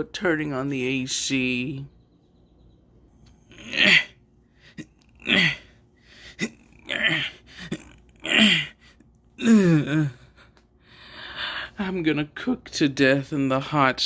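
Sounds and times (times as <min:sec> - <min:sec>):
person gasping and groaning: 0:03.5 - 0:10.5.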